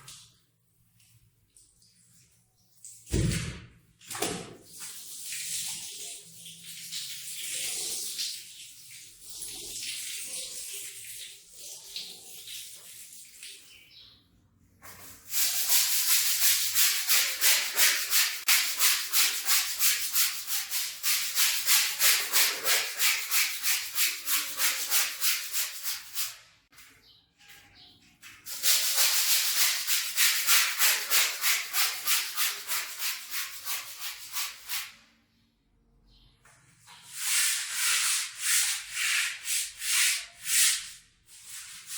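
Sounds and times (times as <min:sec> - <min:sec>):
stiff brush scrubbing wet rug: 0:15.0 - 0:26.3.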